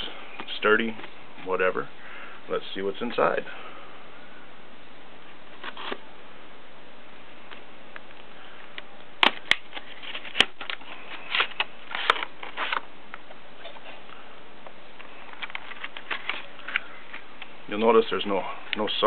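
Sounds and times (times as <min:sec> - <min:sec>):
packaging rustling and scraping: 0:05.5 - 0:06.0, 0:09.2 - 0:12.9, 0:15.0 - 0:17.3.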